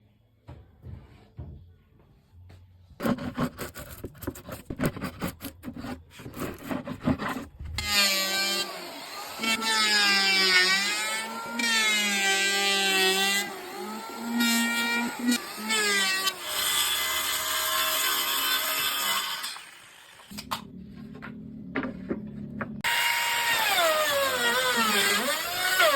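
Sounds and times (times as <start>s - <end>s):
knocks and scraping on wood: 3.0s - 7.9s, 20.9s - 22.9s.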